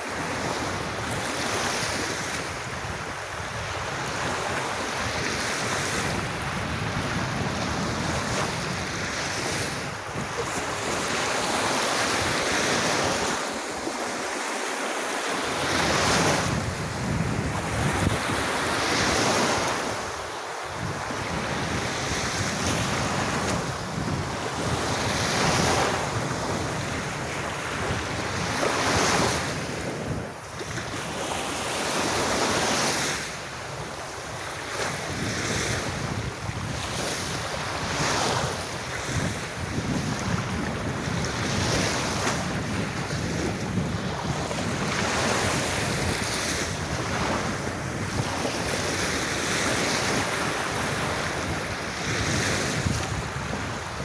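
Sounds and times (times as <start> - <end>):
sea waves breaking on beach: 0.0 - 54.0.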